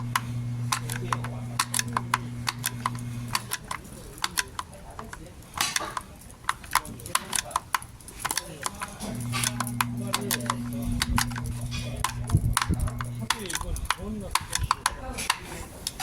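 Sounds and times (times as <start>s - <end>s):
low hum: 0.0s - 3.4s, 9.2s - 13.3s.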